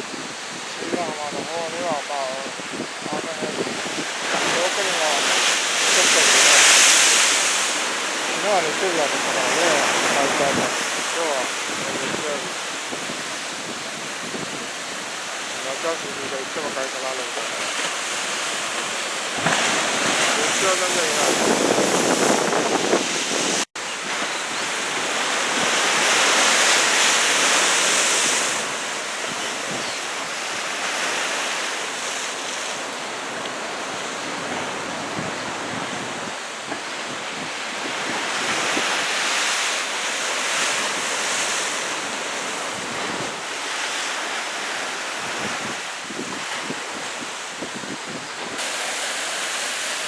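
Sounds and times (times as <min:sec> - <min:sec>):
wind buffeting microphone: 0:00.0 - 0:16.7, 0:19.4 - 0:26.4, 0:33.8 - 0:39.5, 0:44.7 - 0:48.6
ocean waves breaking: 0:00.0 - 0:50.0.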